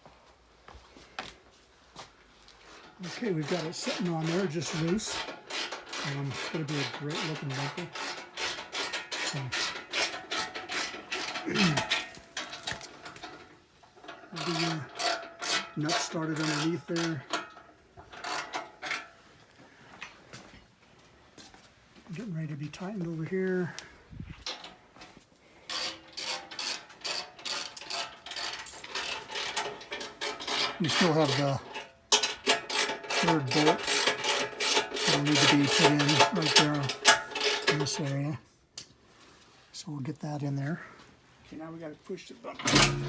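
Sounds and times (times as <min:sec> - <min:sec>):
ratchet wrench clicking: 0:03.1 - 0:11.4, 0:14.4 - 0:17.4, 0:25.7 - 0:38.0.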